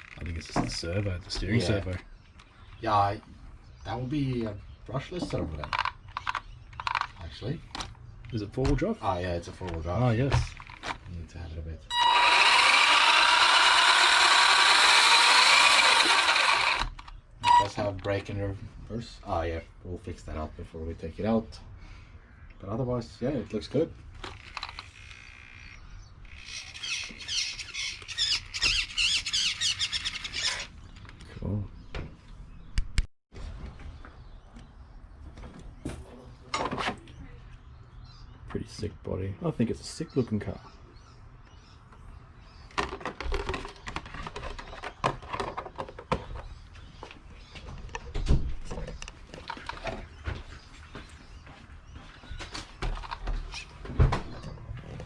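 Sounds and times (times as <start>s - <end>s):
bird chirping: 0.0s - 12.1s, 21.8s - 33.0s, 33.7s - 55.0s
plastic parts clicking and knocking: 5.1s - 8.8s, 9.6s - 11.1s, 24.2s - 25.0s, 42.7s - 46.5s.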